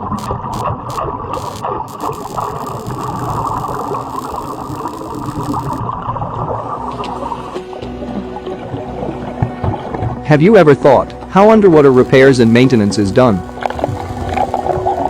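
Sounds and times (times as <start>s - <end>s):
underwater welding arc crackling: 0.0s - 5.9s, 6.7s - 7.7s, 11.7s - 15.0s.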